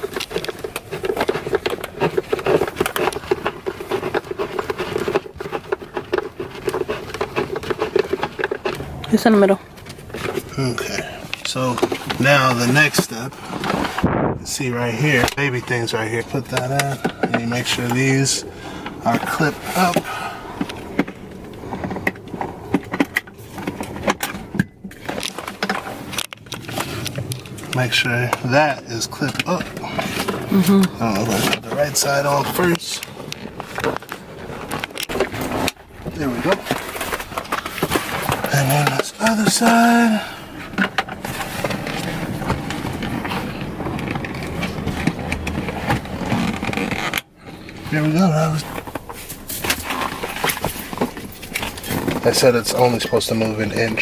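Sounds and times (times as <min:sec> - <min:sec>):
straps rustling: 0:24.9 - 0:54.0.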